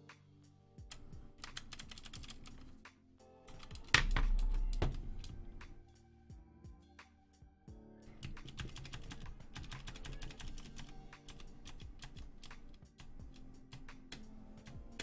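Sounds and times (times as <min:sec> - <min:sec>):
background music: 0:00.0 - 0:15.0
mechanical keyboard clicking: 0:00.9 - 0:02.6, 0:03.5 - 0:05.3, 0:08.2 - 0:14.2.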